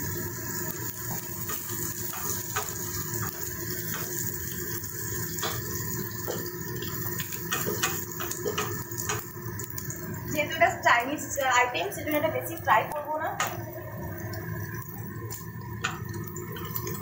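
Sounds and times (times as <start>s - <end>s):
onion sizzling in oil: 0.0s - 17.0s
stirring clicks in pan: 1.4s - 4.2s, 5.3s - 9.9s, 12.9s - 13.6s.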